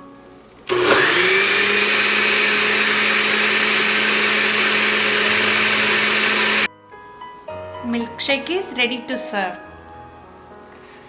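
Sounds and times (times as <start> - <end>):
blender running: 0.7 - 6.7.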